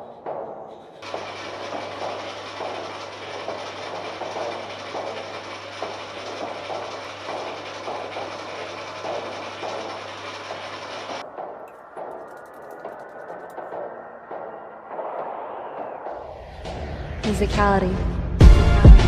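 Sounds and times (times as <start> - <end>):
rhythmic clacking: 0.0 - 16.3
mechanical whirr: 0.8 - 16.9
lathe motor hum: 1.0 - 16.2.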